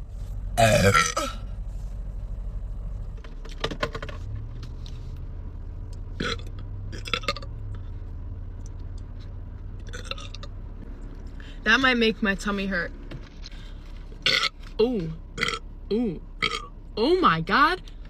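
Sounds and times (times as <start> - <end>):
low steady hum: 0.0 - 18.0
woman burping: 0.6 - 1.4, 15.4 - 16.7.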